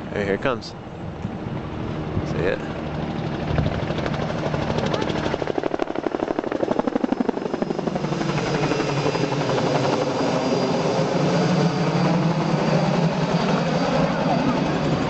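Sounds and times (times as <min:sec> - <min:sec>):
engine whine: 0:00.0 - 0:15.0
helicopter rotor blades thudding: 0:01.1 - 0:15.0.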